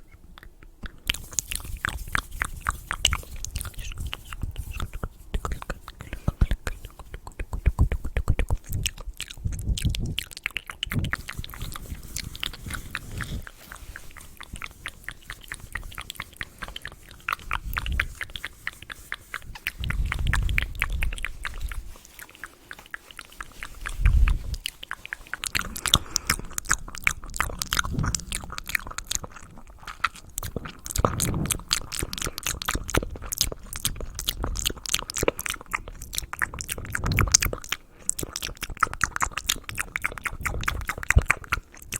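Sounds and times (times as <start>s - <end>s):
wet mouth clicking and smacking: 0.0s - 41.9s
soft low thuds: 27.1s - 29.2s.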